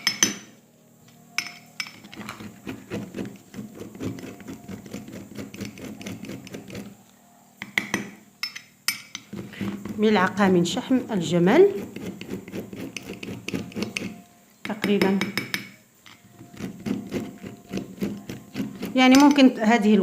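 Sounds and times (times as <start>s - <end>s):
low steady hum: 0.0s - 20.0s
boiling pot rattling: 2.0s - 6.9s, 9.2s - 14.2s, 16.3s - 19.6s.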